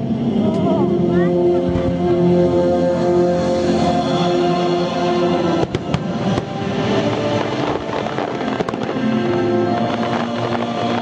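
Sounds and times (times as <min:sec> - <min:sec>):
loud music: 0:00.0 - 0:11.0
fireworks crackling: 0:03.6 - 0:11.0
firework bangs: 0:05.4 - 0:11.0.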